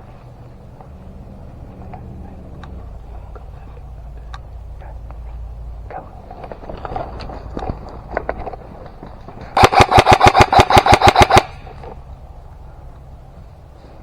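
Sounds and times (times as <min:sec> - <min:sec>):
rustling: 0:00.0 - 0:14.0
airsoft gun firing full auto: 0:09.6 - 0:11.7.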